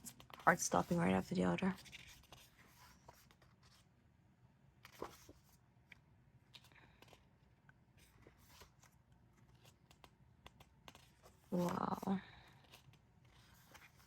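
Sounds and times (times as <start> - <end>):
pages rustling and turning: 0.0 - 4.0, 4.8 - 14.0.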